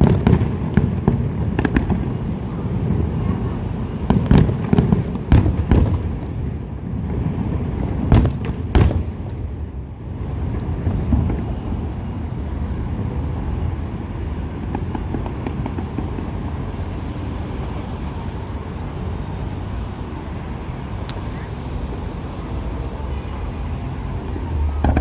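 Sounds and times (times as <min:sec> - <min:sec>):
fireworks bursting: 0:00.0 - 0:12.3, 0:13.0 - 0:18.6, 0:24.4 - 0:25.0
low outdoor rumble: 0:00.0 - 0:25.0.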